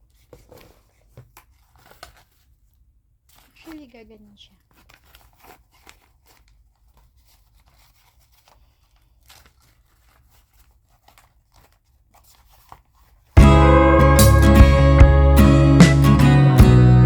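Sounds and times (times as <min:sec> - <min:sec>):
packaging rustling and clicking: 0:04.7 - 0:13.2
acoustic guitar music: 0:13.4 - 0:17.0.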